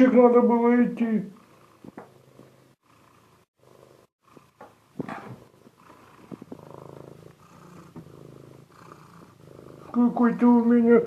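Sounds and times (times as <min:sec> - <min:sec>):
cat purring: 0:01.4 - 0:11.0.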